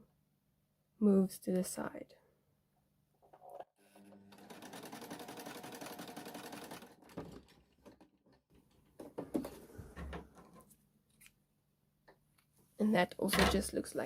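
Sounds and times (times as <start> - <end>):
sewing machine stitching: 3.4 - 8.2.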